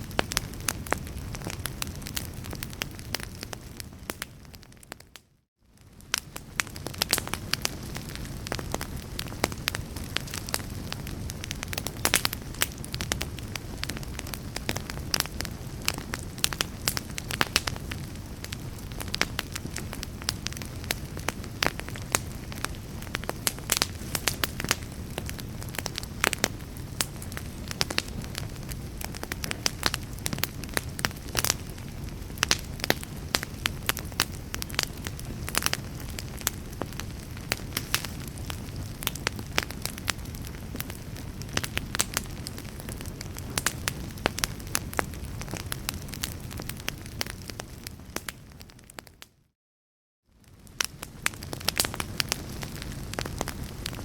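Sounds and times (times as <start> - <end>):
wood fire crackling and popping: 0.0 - 49.3, 50.4 - 54.0.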